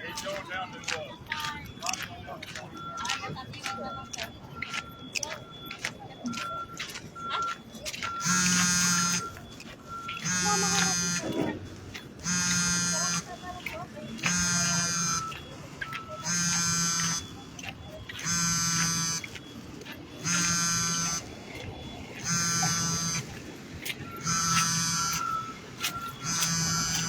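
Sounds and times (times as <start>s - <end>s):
electronic alarm buzzing: 2.7s - 27.0s.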